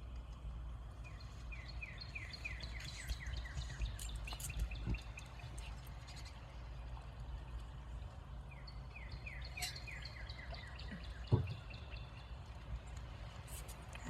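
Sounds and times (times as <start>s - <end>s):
low outdoor rumble: 0.0s - 14.0s
small bird chirping: 1.0s - 6.5s, 8.6s - 12.3s.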